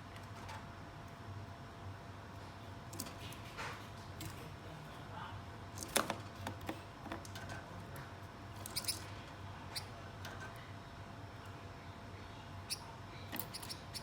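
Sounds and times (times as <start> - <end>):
finches chirping and clicking: 8.6 - 9.1, 12.7 - 14.0.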